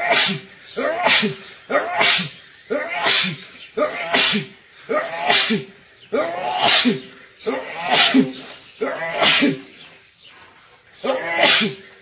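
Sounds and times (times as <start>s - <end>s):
man sneezing: 0.0s - 0.4s, 1.0s - 3.4s, 4.1s - 4.5s, 5.2s - 5.7s, 6.5s - 7.0s, 7.9s - 8.4s, 9.2s - 9.6s, 11.3s - 11.8s.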